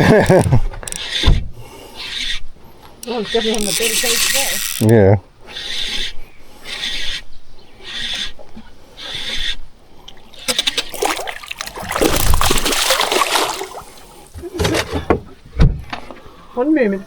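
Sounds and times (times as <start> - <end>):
water splashing beside boat: 10.0 - 14.8.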